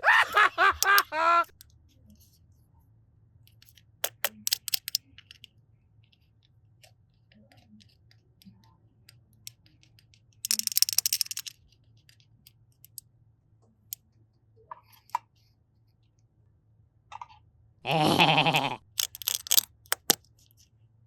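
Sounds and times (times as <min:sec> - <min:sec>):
clicks and taps of objects: 0:00.8 - 0:01.8, 0:03.5 - 0:05.5, 0:06.8 - 0:13.0, 0:18.9 - 0:20.7.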